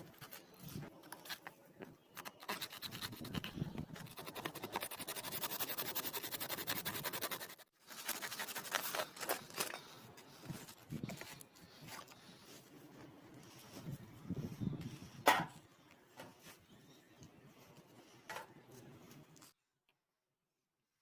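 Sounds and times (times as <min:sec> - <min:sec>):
rapid scraping on hard surface: 0:02.2 - 0:09.6.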